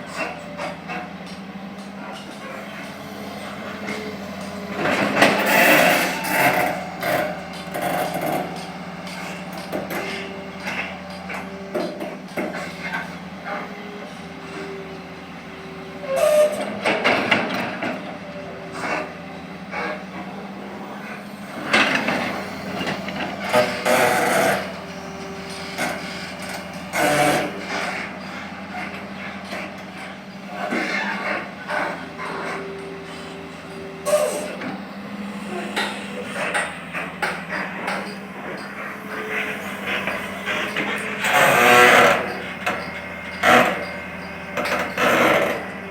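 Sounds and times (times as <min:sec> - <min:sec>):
diesel engine running: 0:00.0 - 0:45.9
rumbling and clanks: 0:00.0 - 0:45.9
short squeal: 0:02.8 - 0:10.9, 0:16.0 - 0:16.8, 0:30.5 - 0:45.9.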